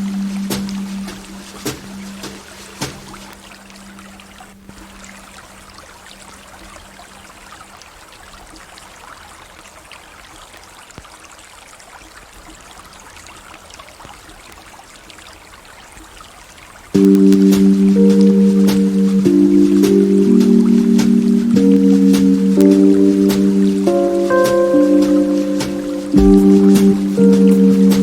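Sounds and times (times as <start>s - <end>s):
low held note: 0.0s - 2.4s, 17.0s - 28.0s
river water flowing: 0.0s - 28.0s.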